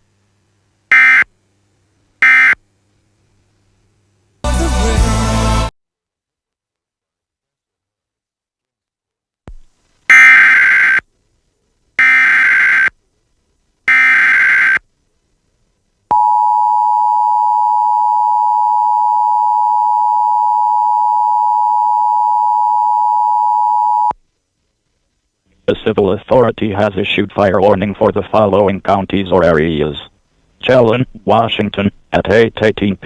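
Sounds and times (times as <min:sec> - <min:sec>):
screeching data tones: 0:10.1 - 0:11.0, 0:13.9 - 0:14.8.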